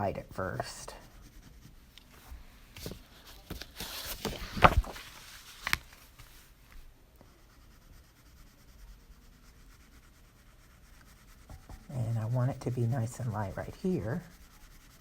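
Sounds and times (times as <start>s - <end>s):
pencil shading on paper: 0.4s - 2.0s, 7.2s - 15.0s.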